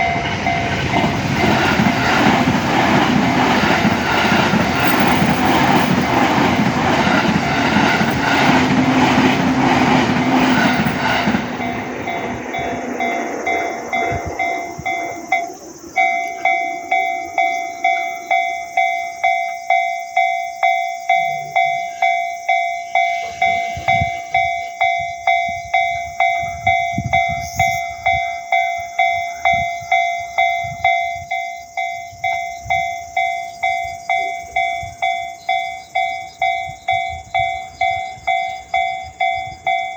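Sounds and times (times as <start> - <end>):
crossing warning bell ringing: 0.0 - 39.9
train rail clatter: 0.0 - 39.9.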